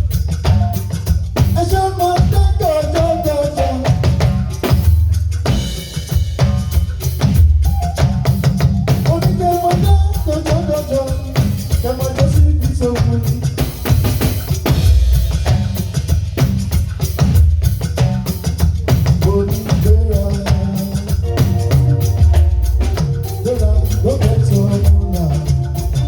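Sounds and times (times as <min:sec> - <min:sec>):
live band music: 0:00.0 - 0:26.0
rapid percussion and drums: 0:00.0 - 0:26.0
heavy bass line: 0:14.6 - 0:26.0
short melodic phrases: 0:21.2 - 0:26.0.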